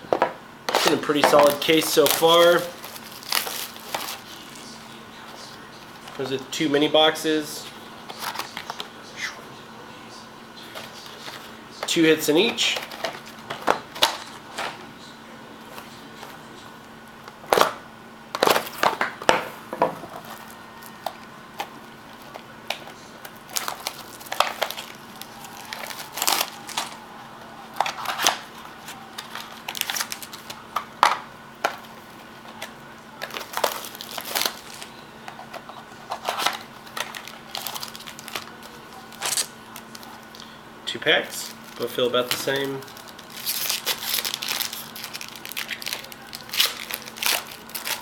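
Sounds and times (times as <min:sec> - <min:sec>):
packaging crinkling and rustling: 0:00.7 - 0:04.8, 0:08.1 - 0:08.9, 0:12.4 - 0:14.8, 0:18.4 - 0:19.4, 0:20.0 - 0:40.5, 0:41.4 - 0:48.0.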